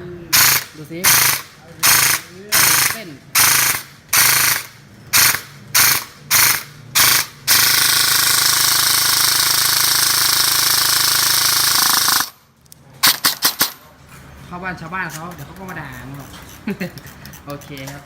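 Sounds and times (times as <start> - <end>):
airsoft rifle automatic fire: 0.4 - 12.4, 13.0 - 13.8.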